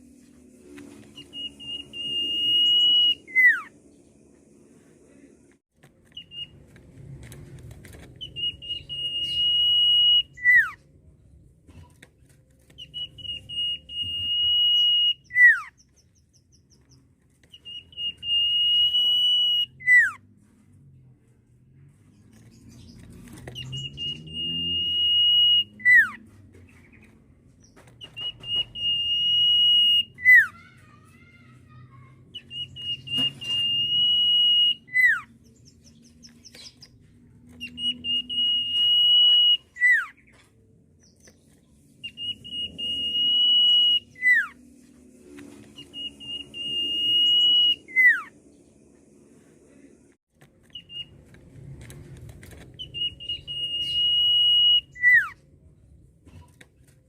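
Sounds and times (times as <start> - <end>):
bird whistling long high notes: 1.1 - 3.7, 8.2 - 10.8, 12.8 - 15.7, 17.6 - 20.2, 23.6 - 26.2, 28.2 - 30.5, 32.4 - 35.3, 37.6 - 40.1, 42.0 - 44.6, 45.8 - 48.3, 52.8 - 55.3.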